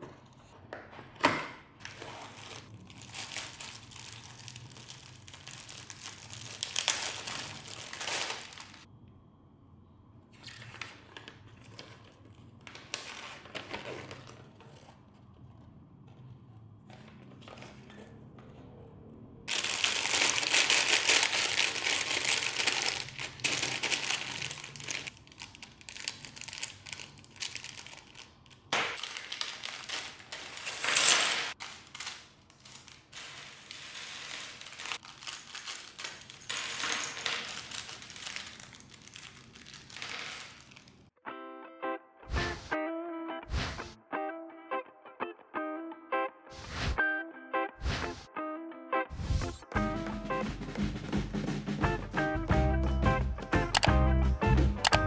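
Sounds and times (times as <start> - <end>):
plastic packaging crinkling: 1.8 - 8.9, 10.4 - 15.2, 19.5 - 41.1.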